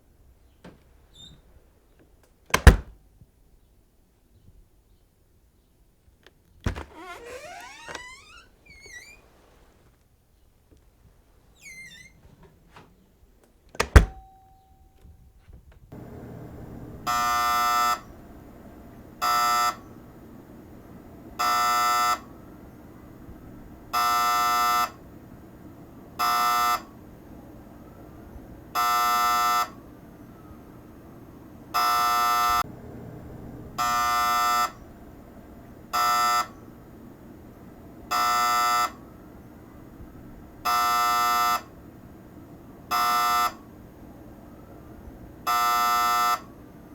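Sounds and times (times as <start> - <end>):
electric buzzer blasts: 6.7 - 9.2, 16.0 - 18.4, 19.2 - 19.9, 21.4 - 22.5, 23.9 - 25.0, 26.2 - 27.0, 28.7 - 29.8, 31.8 - 32.7, 33.8 - 34.9, 35.9 - 36.6, 38.1 - 39.0, 40.6 - 41.7, 42.9 - 43.7, 45.4 - 46.5
low background hum: 10.3 - 46.9.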